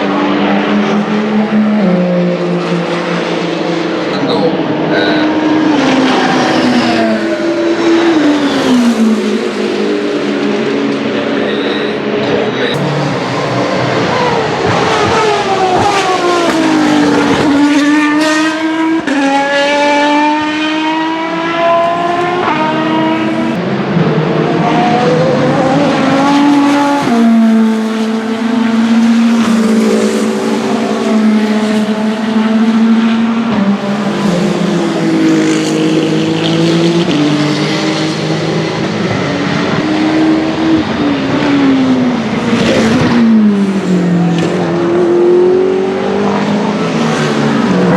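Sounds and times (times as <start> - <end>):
racing car engines shifting gears: 0.0 - 47.9.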